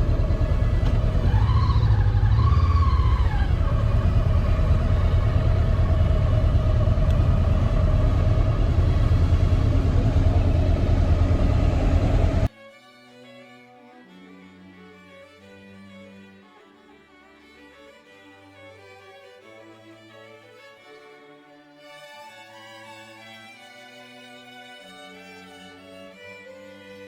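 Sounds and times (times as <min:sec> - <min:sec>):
high whine: 0:00.0 - 0:12.5
motorcycle engine and wind rumble: 0:00.0 - 0:12.5.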